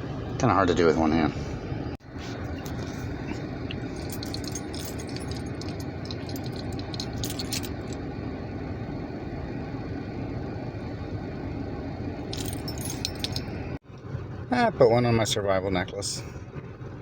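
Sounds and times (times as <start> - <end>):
steady low rumble: 1.2 - 14.8
carabiners clicking and jingling: 2.6 - 8.0, 12.3 - 13.6.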